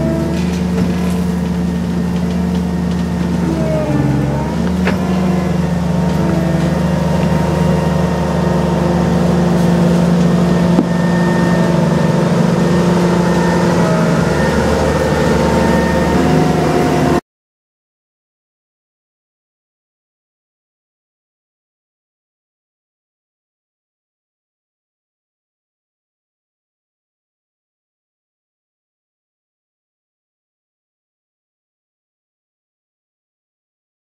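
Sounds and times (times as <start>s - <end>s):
combine harvester engine running: 0.0s - 17.2s.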